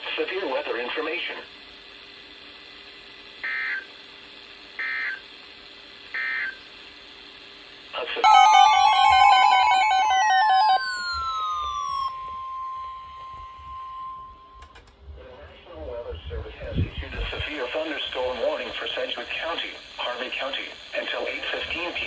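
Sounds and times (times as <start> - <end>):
alert data tone bursts: 8.2 - 13.1
warbling electronic tones: 8.2 - 14.1
steady high tone: 8.2 - 14.3.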